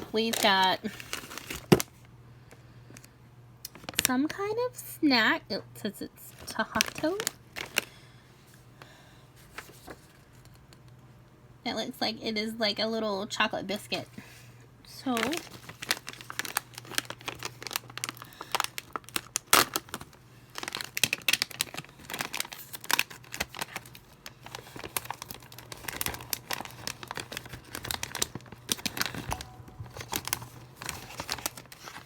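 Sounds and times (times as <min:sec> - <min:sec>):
plastic wrapper crinkling and tearing: 0:00.0 - 0:02.0, 0:03.6 - 0:04.1, 0:06.3 - 0:08.0, 0:14.9 - 0:32.0.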